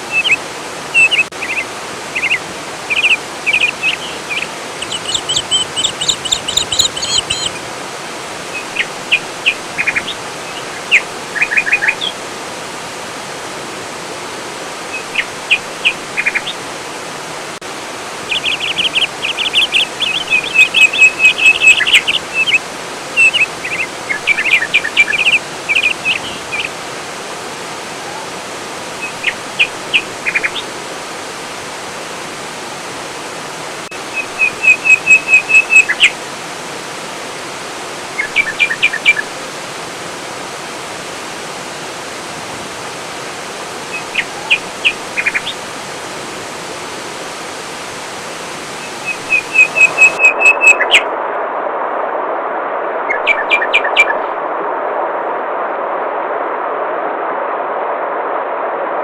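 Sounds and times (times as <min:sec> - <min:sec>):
songbirds chirping and trilling: 0:00.0 - 0:12.8, 0:14.7 - 0:31.7, 0:33.8 - 0:36.3, 0:38.0 - 0:39.3, 0:43.6 - 0:45.9, 0:48.6 - 0:51.0, 0:53.1 - 0:54.2
flowing water rushing: 0:00.0 - 0:54.8.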